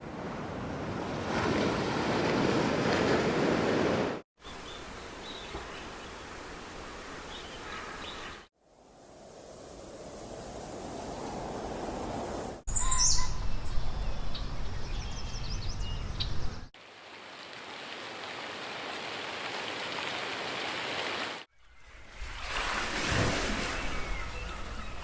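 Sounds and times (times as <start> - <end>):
birds chirping: 4.4 - 8.5, 12.7 - 16.7, 23.5 - 25.0.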